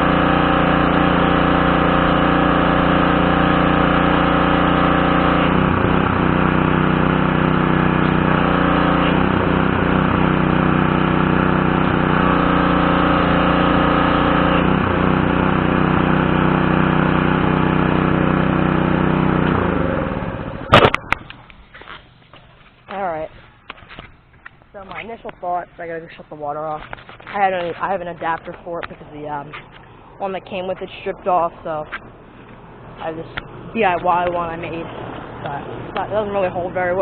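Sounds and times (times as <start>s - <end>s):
pressure washer engine running: 0.0s - 21.4s, 30.3s - 37.0s.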